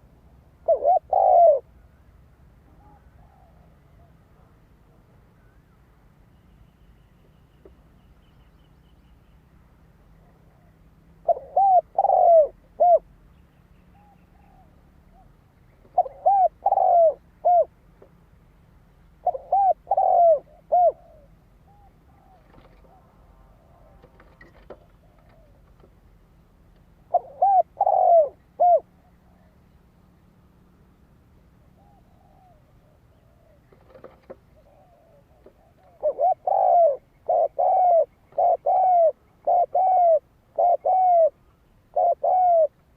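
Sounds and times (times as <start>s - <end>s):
dove cooing: 0.0s - 1.8s, 2.7s - 4.5s, 10.2s - 13.1s, 13.9s - 17.8s, 19.2s - 25.9s, 27.0s - 29.6s, 31.6s - 42.9s.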